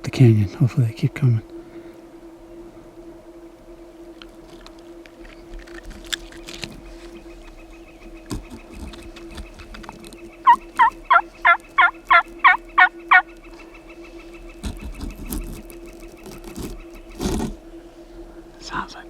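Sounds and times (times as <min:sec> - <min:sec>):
turkey yelps: 0:10.4 - 0:13.3.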